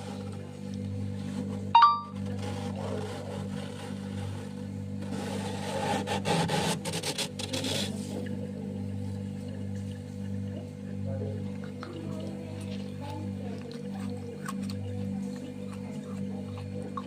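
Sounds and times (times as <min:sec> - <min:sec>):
freezer frost crunching: 0:00.0 - 0:08.6, 0:09.4 - 0:17.0
steady low hum: 0:00.0 - 0:17.0
short loud beep: 0:01.8 - 0:02.2.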